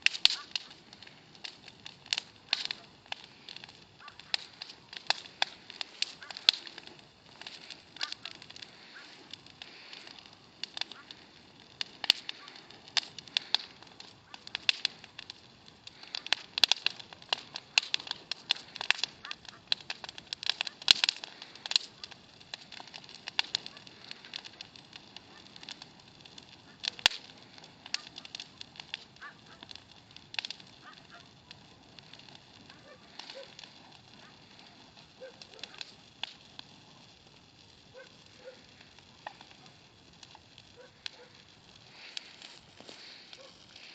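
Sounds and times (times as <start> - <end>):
faint hiss: 0.0 - 19.2, 30.8 - 43.9
bonfire crackling and popping: 0.0 - 43.9.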